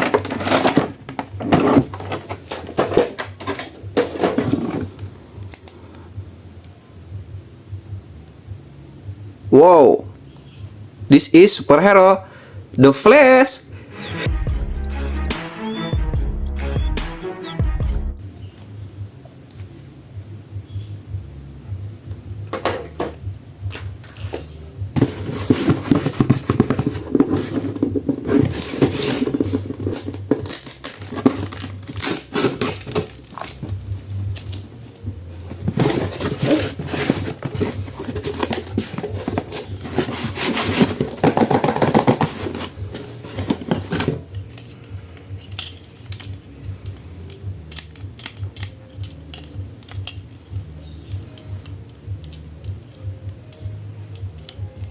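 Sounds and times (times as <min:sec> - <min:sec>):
plastic packaging crinkling: 0:00.0 - 0:04.9, 0:25.0 - 0:44.8.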